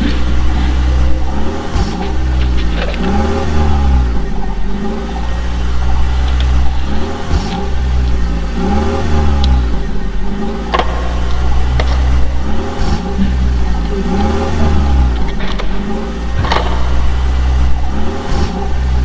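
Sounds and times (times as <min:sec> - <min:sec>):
toy vehicle engine revving: 0:00.0 - 0:19.0
sharp clicks: 0:06.2 - 0:08.2.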